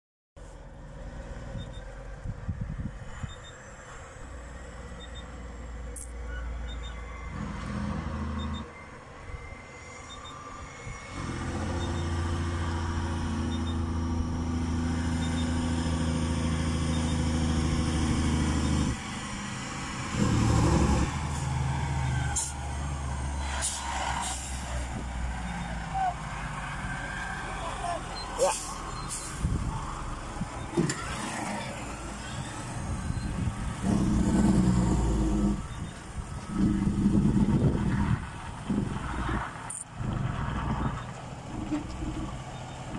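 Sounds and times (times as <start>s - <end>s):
truck engine brake: 28.1s - 39.9s.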